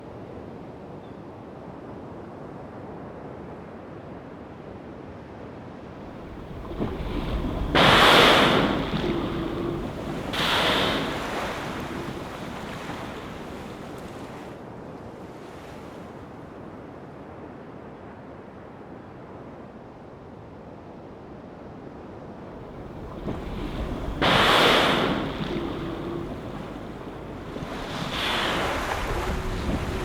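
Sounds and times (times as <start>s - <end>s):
wind: 6.0s - 16.2s, 22.5s - 30.0s
whale blow exhalations: 6.1s - 14.2s, 22.6s - 30.0s
sea noise: 6.1s - 14.4s, 22.6s - 30.0s.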